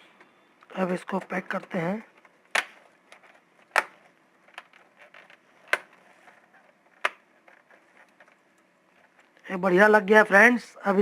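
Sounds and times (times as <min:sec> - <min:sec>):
plastic clips snapping into place: 0:02.5 - 0:04.7.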